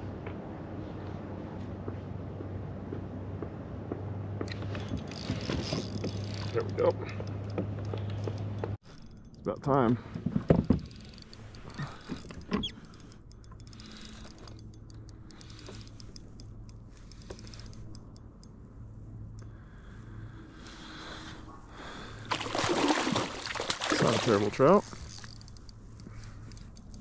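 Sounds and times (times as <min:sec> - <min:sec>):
steady low hum: 0:06.9 - 0:27.0.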